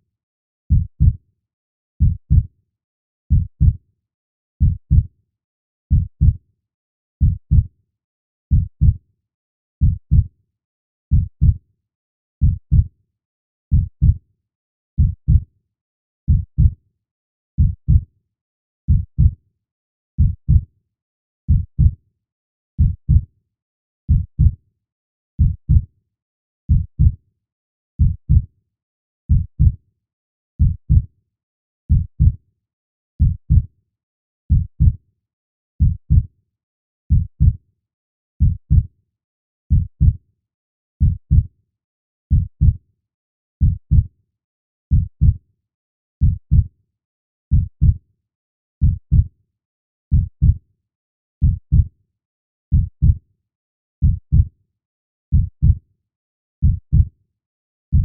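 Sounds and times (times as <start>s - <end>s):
slow heartbeat: 7.2s - 7.6s, 9.8s - 10.3s, 12.4s - 12.8s, 16.3s - 16.8s, 17.6s - 18.0s, 18.9s - 19.4s, 20.2s - 20.6s, 22.8s - 23.2s, 24.1s - 24.6s, 25.4s - 25.8s, 26.7s - 27.2s, 28.0s - 28.4s, 29.3s - 29.8s, 30.6s - 31.1s, 31.9s - 32.4s, 33.2s - 33.7s, 34.5s - 35.0s, 35.8s - 36.2s, 37.1s - 37.6s, 38.4s - 38.9s, 39.7s - 40.2s, 41.0s - 41.5s, 42.3s - 42.8s, 43.6s - 44.0s, 44.9s - 45.4s, 46.2s - 46.7s, 47.5s - 48.0s, 48.8s - 49.3s, 50.1s - 50.6s, 51.4s - 51.9s, 52.7s - 53.2s, 54.0s - 54.5s, 55.3s - 55.8s, 56.6s - 57.1s.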